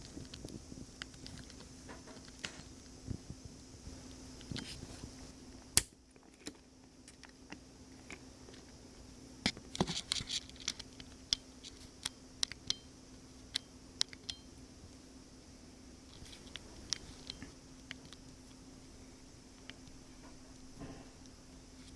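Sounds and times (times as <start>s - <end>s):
faint steady hum: 0.0s - 21.9s.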